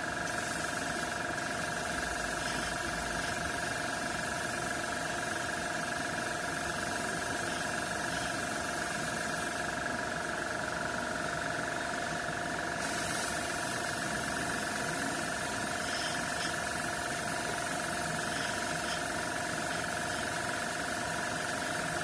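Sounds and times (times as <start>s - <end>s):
airbrush compressor motor running: 0.2s - 22.0s.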